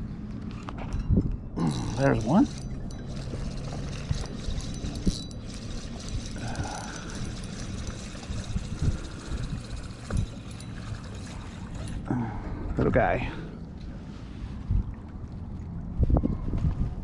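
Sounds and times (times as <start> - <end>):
fishing reel clicking: 1.6 - 12.1.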